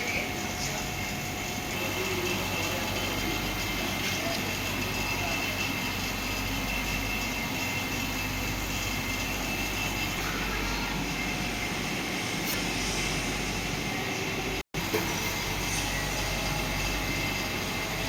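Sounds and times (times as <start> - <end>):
refrigeration compressor humming: 0.0 - 18.0.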